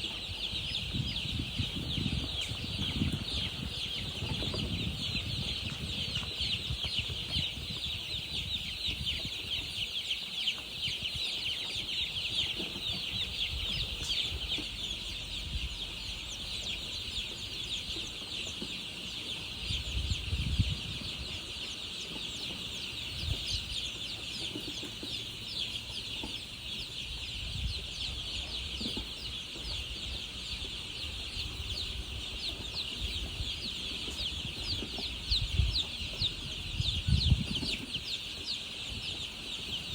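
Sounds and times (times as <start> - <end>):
baby chicks cheeping: 0.0 - 39.9.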